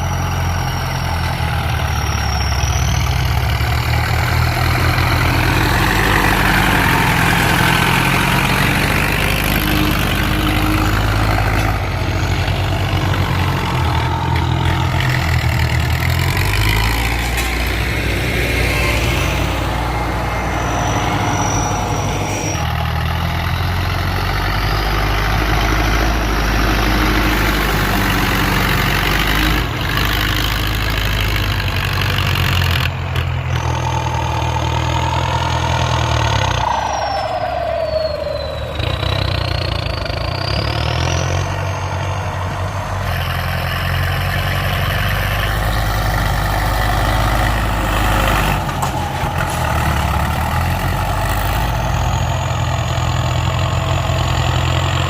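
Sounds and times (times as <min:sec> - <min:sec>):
tractor diesel engine running: 0:00.0 - 0:55.0
high whine sliding in pitch: 0:04.4 - 0:24.4, 0:33.6 - 0:43.7.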